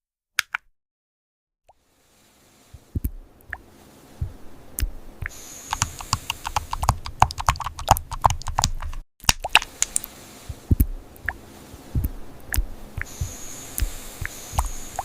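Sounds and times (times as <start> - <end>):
faint hiss: 1.7 - 7.0, 9.6 - 15.0
typing on computer keyboard: 5.7 - 9.0.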